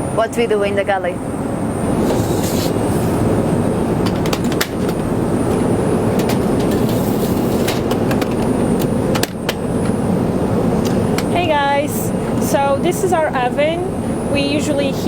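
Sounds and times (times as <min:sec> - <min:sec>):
airliner cabin noise: 0:00.0 - 0:15.0
sharp clicks and knocks: 0:04.0 - 0:07.0, 0:07.6 - 0:10.0.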